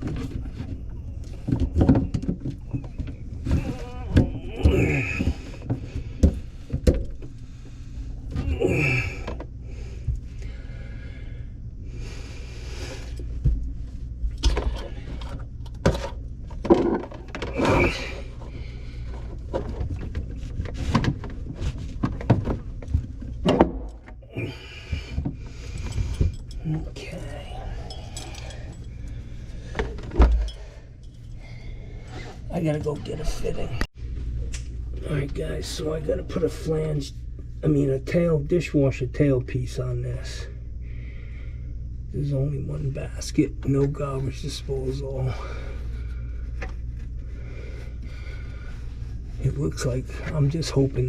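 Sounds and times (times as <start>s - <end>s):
person muttering: 3.5s - 5.4s.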